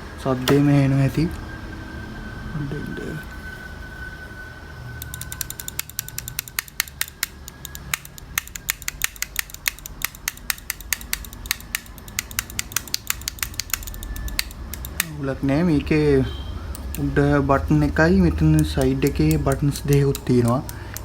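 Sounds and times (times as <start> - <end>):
mouse buttons clicking: 5.0 - 15.2, 16.7 - 17.1, 18.4 - 21.0.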